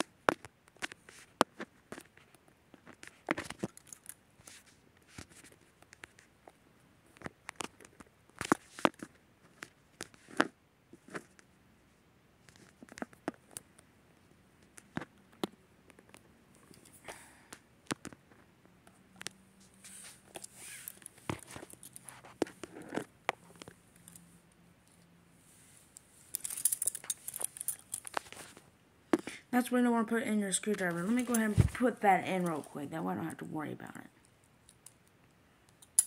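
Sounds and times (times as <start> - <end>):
rustling: 19.2 - 29.4.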